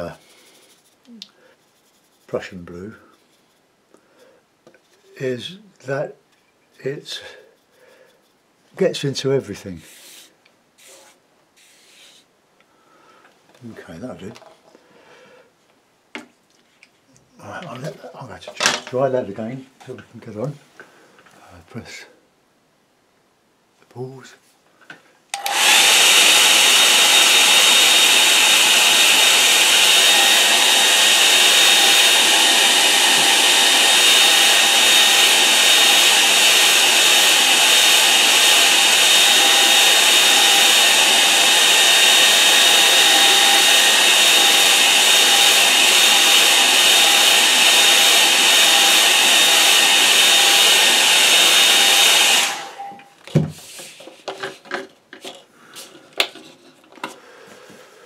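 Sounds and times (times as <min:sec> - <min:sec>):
hair dryer blowing: 0:25.3 - 0:53.0.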